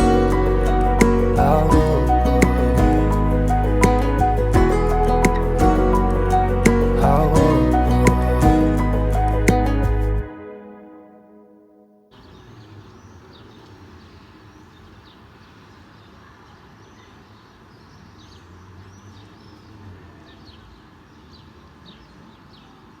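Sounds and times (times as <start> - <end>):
birds chirping: 12.1 - 23.0.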